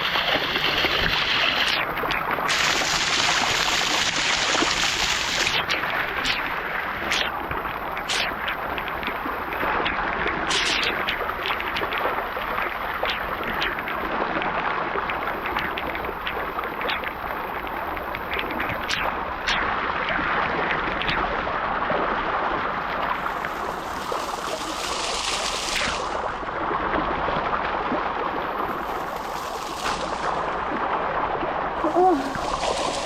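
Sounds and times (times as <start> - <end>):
waterfall pouring: 0.0 - 14.1, 22.3 - 26.4, 28.4 - 31.0, 31.6 - 33.0
water splashes: 0.0 - 33.0.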